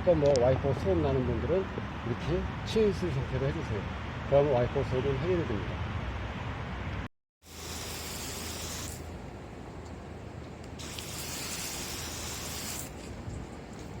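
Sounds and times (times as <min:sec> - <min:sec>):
water hissing on windscreen: 0:07.4 - 0:09.1, 0:10.8 - 0:13.3.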